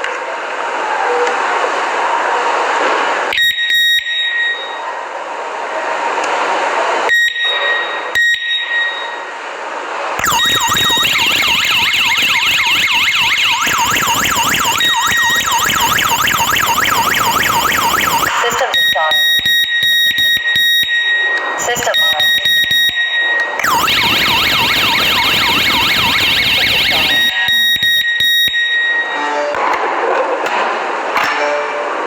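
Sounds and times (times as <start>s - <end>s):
electronic alarm beeps: 3.3s - 4.8s, 10.2s - 29.3s
warbling alarm siren: 10.2s - 29.4s.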